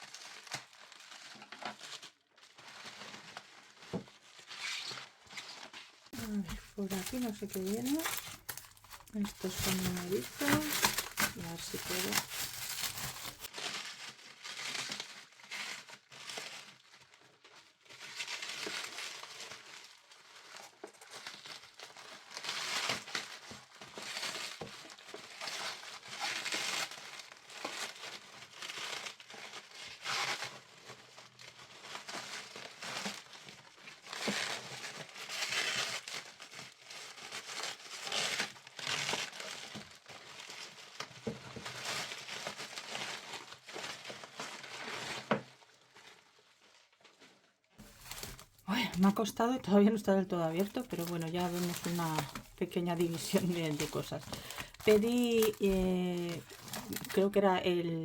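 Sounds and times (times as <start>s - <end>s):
packaging crinkling: 5.4s - 47.2s, 47.8s - 58.0s.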